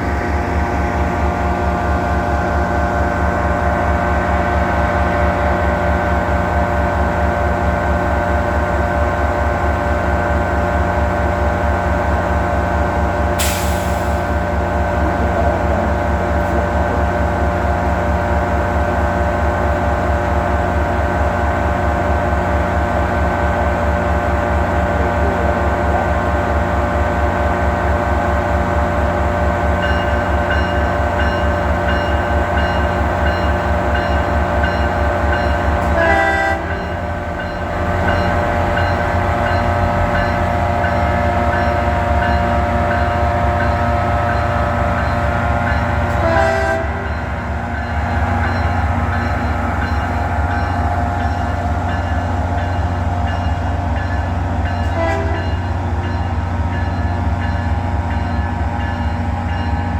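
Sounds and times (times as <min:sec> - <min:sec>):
train rumbling past: 0:00.0 - 0:59.9
train horn blasts: 0:35.8 - 0:37.0, 0:46.0 - 0:47.4, 0:54.7 - 0:55.7.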